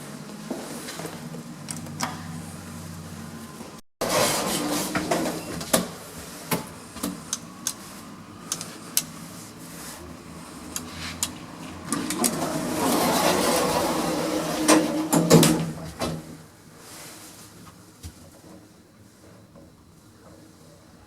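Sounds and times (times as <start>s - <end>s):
lift machinery hum: 0.0s - 16.0s.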